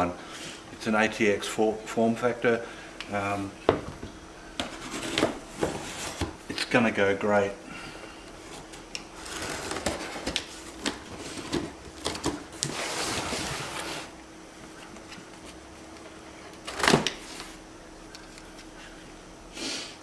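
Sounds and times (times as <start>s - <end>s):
cardboard packaging rustling: 8.4s - 14.2s.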